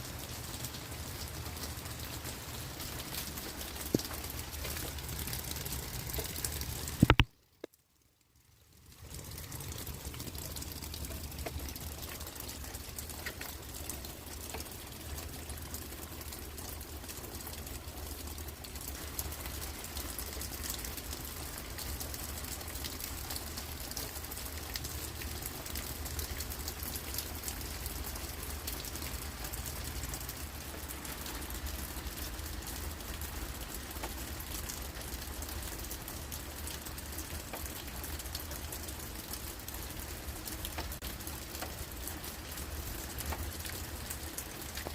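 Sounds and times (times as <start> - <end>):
rain pattering on leaves: 0.0 - 44.9
low steady rumble: 8.1 - 22.5.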